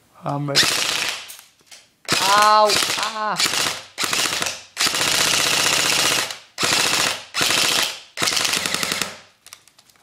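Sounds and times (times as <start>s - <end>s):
airsoft rifle firing full auto: 0.6s - 1.3s, 2.1s - 9.2s.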